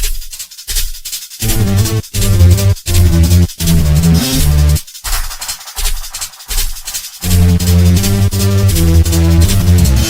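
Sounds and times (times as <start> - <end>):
bright high-end percussion: 0.0 - 10.0
short low hits: 1.4 - 6.0
bass-boosted entrance music: 1.4 - 6.1, 7.2 - 10.0.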